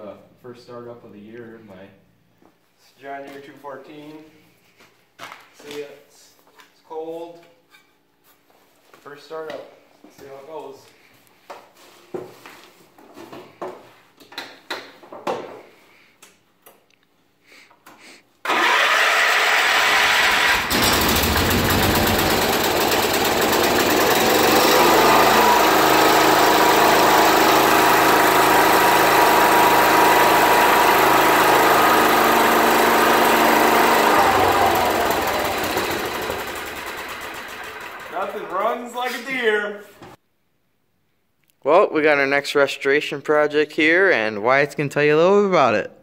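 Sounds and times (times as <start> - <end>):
engine starter cranking: 18.4 - 38.6
tractor engine running: 18.5 - 38.6.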